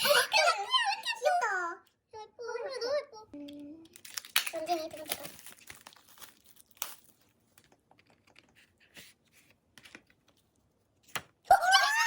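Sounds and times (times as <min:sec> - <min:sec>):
plastic candy packaging crinkling: 0:03.4 - 0:08.6
excited high-pitched voice crying out: 0:11.5 - 0:12.0.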